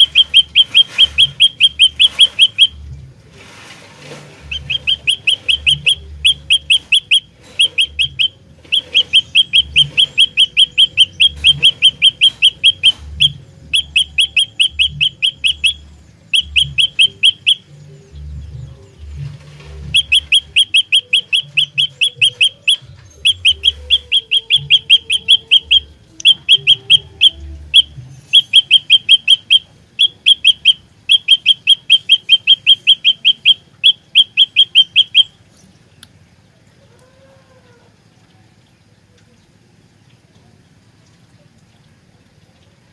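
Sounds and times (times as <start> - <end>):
bird singing sharp high notes: 0.0 - 2.9, 4.4 - 35.4.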